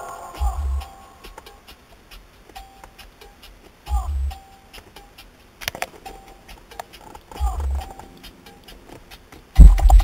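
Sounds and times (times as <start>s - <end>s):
light ticking beat: 0.0s - 10.0s
bass-heavy song on car audio: 0.3s - 1.4s, 3.9s - 4.5s, 7.4s - 8.0s, 9.6s - 10.0s
deep bass hit: 9.6s - 10.0s.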